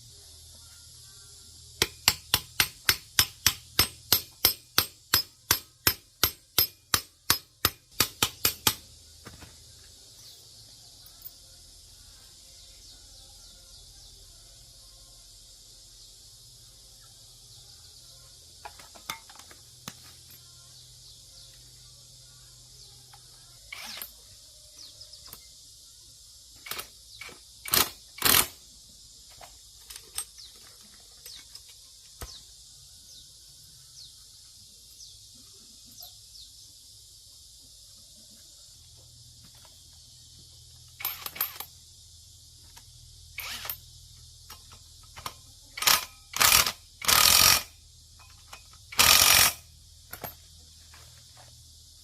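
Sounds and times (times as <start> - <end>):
metal tools clinking: 18.6 - 20.4, 48.2 - 50.4.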